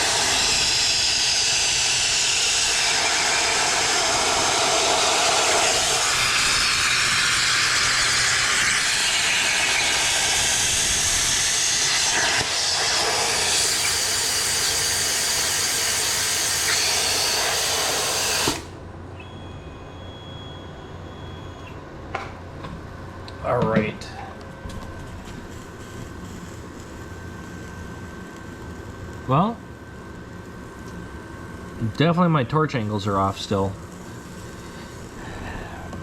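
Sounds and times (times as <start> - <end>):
plasma cutter hissing: 0.0 - 18.7, 31.6 - 35.9.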